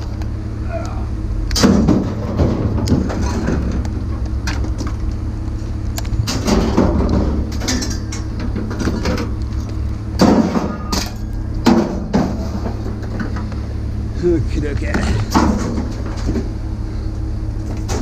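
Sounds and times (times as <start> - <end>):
vehicle idling hum: 0.0 - 18.0
objects knocking and clattering: 1.6 - 5.1, 6.2 - 9.4, 15.0 - 16.5.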